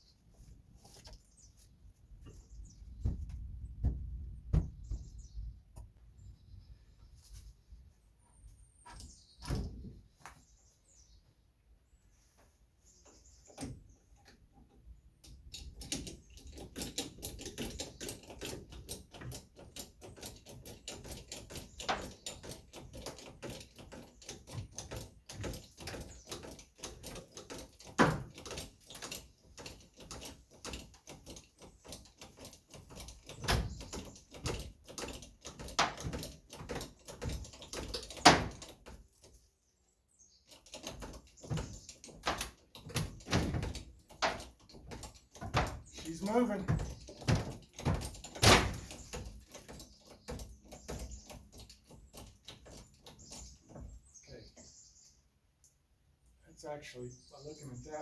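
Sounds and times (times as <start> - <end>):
small rapid clicks and knocks: 13.5 - 39.4, 40.5 - 54.0.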